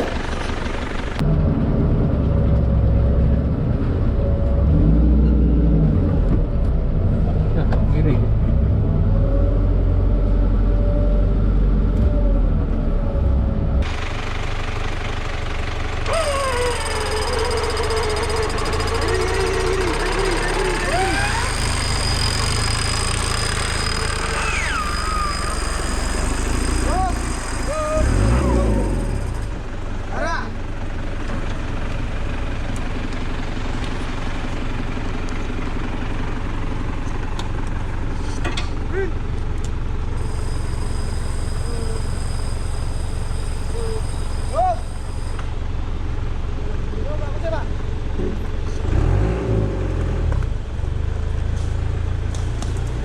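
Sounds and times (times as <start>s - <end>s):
off-road engine rumbling: 0.0s - 53.0s.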